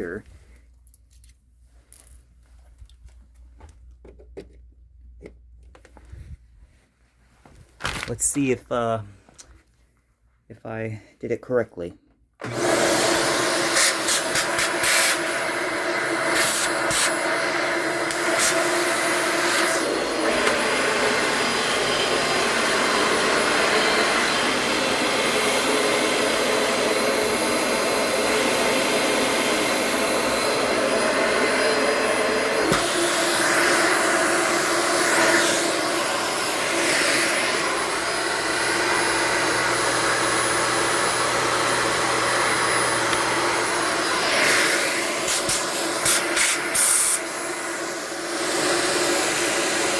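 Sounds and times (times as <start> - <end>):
vacuum cleaner motor whining: 12.4 - 49.9.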